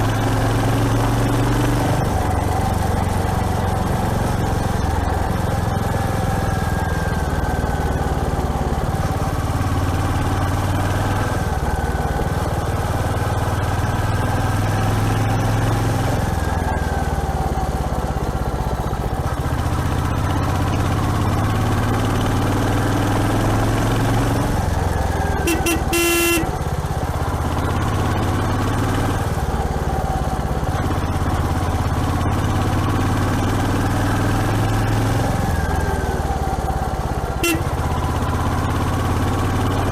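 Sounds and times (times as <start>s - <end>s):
motorcycle engine running: 0.0s - 39.9s
horn sounding: 25.4s - 26.7s, 37.4s - 38.0s.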